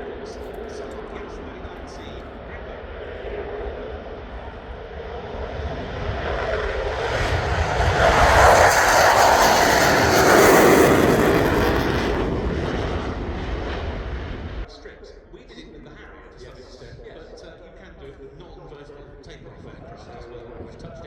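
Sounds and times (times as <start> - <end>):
fighter jet roaring past: 0.0 - 14.7.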